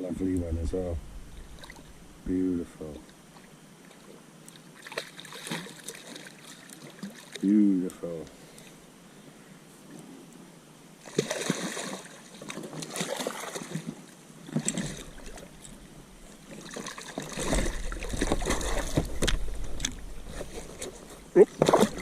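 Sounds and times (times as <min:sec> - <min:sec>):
low rumble: 0:00.2 - 0:02.4
water splashing against a boat: 0:02.8 - 0:08.7, 0:11.0 - 0:22.0.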